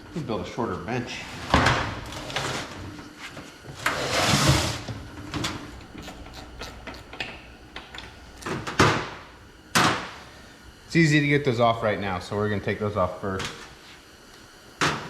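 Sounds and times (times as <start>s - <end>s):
scraping slide: 3.8s - 7.1s.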